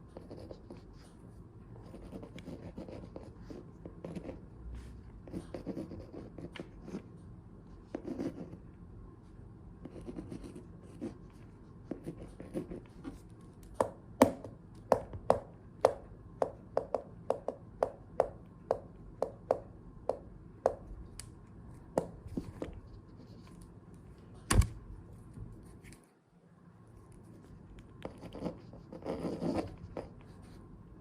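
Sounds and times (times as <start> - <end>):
soft rustling and scratching: 22.3 - 23.8.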